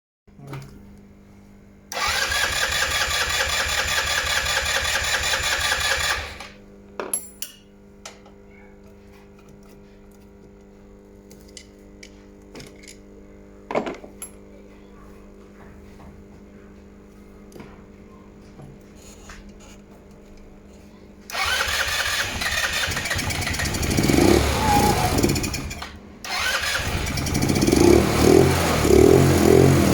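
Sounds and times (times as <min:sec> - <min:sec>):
scooter electric starter cranking: 0:01.9 - 0:06.6, 0:21.3 - 0:29.3.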